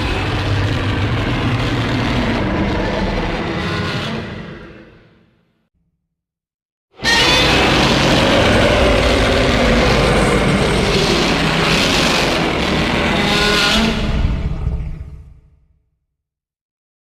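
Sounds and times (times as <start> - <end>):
long harsh monster call: 7.0 - 14.7.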